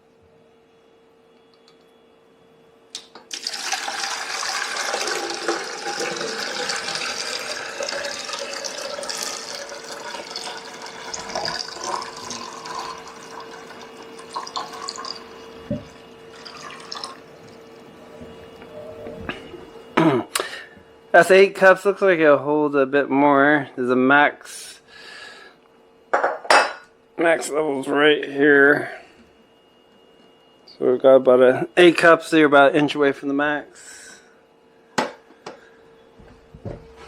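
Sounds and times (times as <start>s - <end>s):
click: 1.4s - 1.9s
water pouring into tank: 3.3s - 17.3s.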